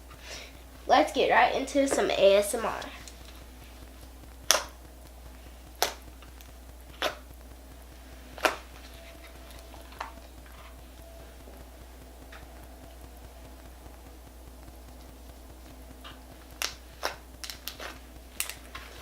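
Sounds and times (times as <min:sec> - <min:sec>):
slime clicking pops: 0:04.4 - 0:04.8, 0:05.7 - 0:07.2.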